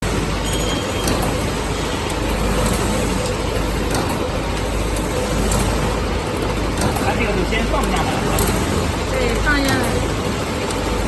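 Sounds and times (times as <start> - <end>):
packaging machine running: 0.0 - 11.0.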